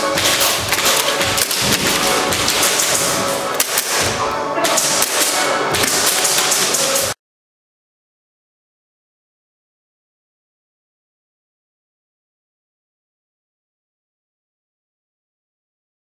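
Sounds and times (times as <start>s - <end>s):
music with heavy hits: 0.0s - 7.2s.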